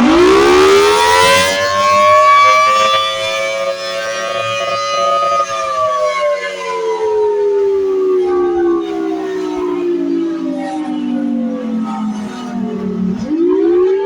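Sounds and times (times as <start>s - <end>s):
warning siren wailing: 0.0s - 14.0s.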